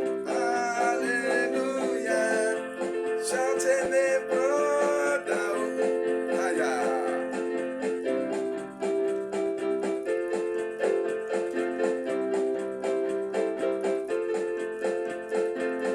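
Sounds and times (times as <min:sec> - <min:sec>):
electric piano chords: 0:00.0 - 0:15.9.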